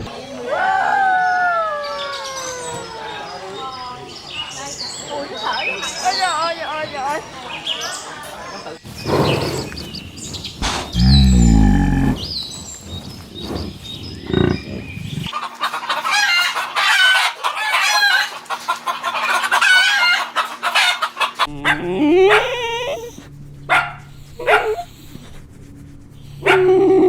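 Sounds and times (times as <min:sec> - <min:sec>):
chickens clucking: 0:08.9 - 0:12.2, 0:14.3 - 0:21.7.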